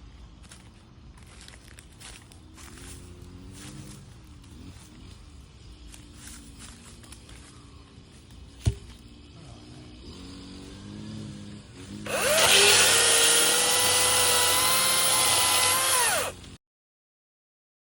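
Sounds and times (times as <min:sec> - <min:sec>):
electric chainsaw whine: 0:09.0 - 0:16.6.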